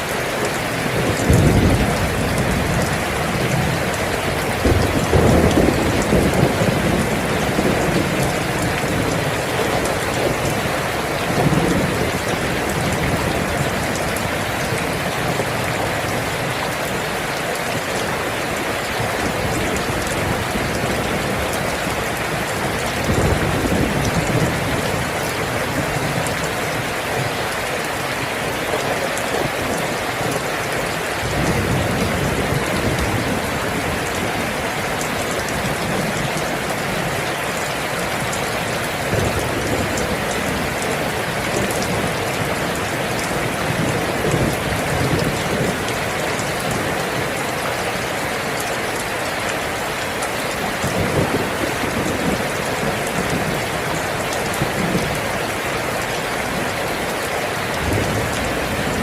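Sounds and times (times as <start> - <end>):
heavy rain falling: 0.0 - 59.0
thunder rumbling: 0.8 - 16.3, 19.1 - 26.9, 57.7 - 59.0.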